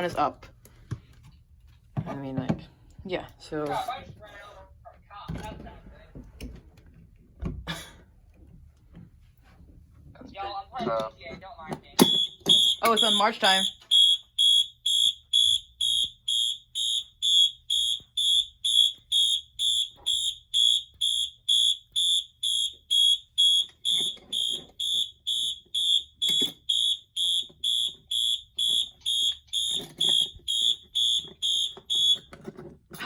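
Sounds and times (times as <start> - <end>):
pulsing fire alarm horn: 12.0 - 32.3.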